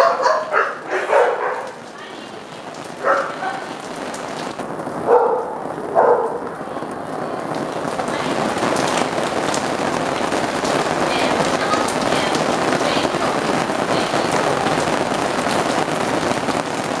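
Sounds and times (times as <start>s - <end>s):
heavy rain on hard surfaces: 0.0s - 17.0s.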